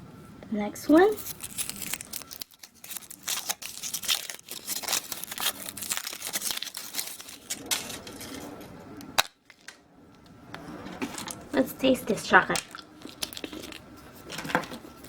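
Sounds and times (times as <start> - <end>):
foil wrapper crinkling and ripping: 0.9 - 8.4, 12.5 - 15.0.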